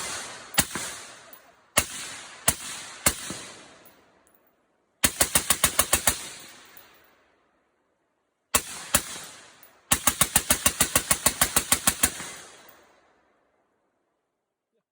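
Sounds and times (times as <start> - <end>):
gunshot echo: 0.0 - 3.8
rifle shots: 0.0 - 3.9, 5.0 - 6.9, 8.5 - 12.8.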